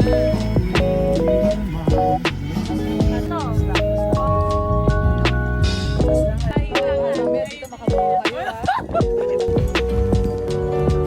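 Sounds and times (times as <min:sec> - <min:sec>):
person singing or rapping: 0:00.0 - 0:05.2, 0:05.9 - 0:09.0
background music with steady beat: 0:00.0 - 0:11.0.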